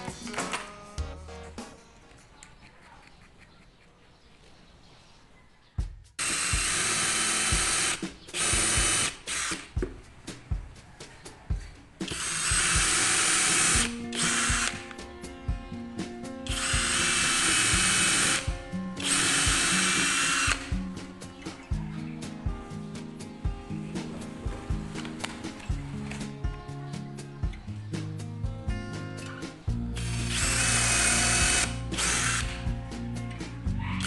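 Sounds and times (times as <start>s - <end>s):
background music with beat: 0.0s - 2.2s, 5.8s - 34.0s
impact drill bursts: 6.2s - 9.7s, 12.1s - 14.8s, 16.5s - 20.7s, 30.0s - 32.6s.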